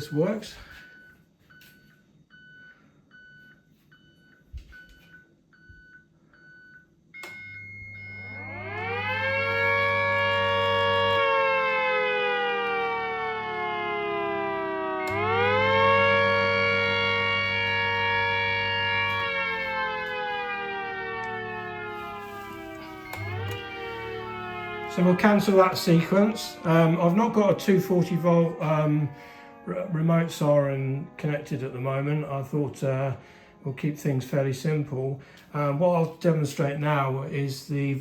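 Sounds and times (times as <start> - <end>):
siren wailing: 0.0 - 1.1, 7.2 - 34.9
low hum: 7.2 - 33.7.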